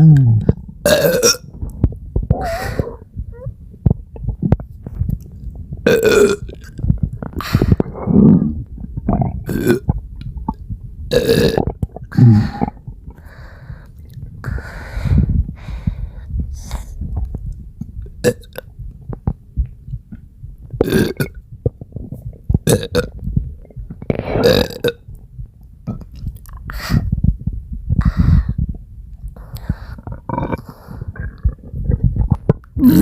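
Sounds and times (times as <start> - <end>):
person burping: 0.0 - 1.5, 5.9 - 6.6, 7.8 - 9.9, 11.1 - 12.8, 20.8 - 21.4, 22.7 - 23.1, 24.3 - 25.0, 30.2 - 30.6, 32.8 - 33.0
stomach gurgling: 0.0 - 33.0.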